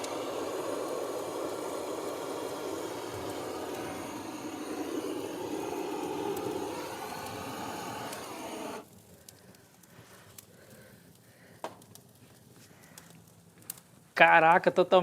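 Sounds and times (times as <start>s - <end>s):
steady rushing noise: 0.0s - 8.8s
fire crackling in fireplace: 0.0s - 15.0s.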